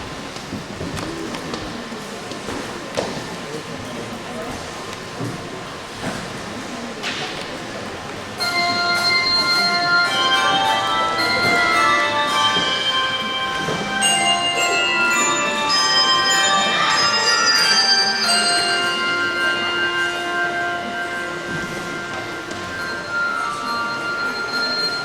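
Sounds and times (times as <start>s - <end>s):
handbell choir playing: 8.4s - 25.0s.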